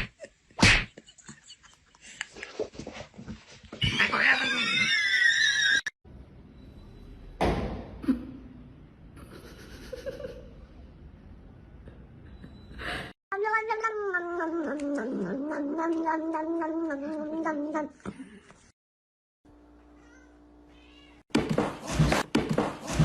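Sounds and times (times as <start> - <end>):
thump: 7.4 - 7.9.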